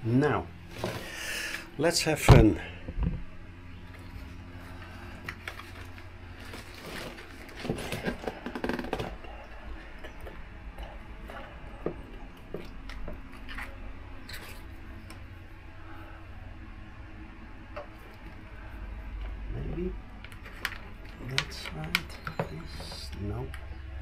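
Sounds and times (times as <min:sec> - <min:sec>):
steady low hum: 0:00.0 - 0:24.0
plastic scraping and rubbing: 0:05.4 - 0:09.2.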